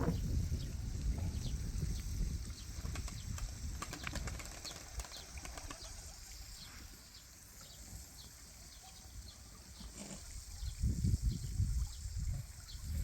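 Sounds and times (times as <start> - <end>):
bird wings flapping: 2.8 - 6.2.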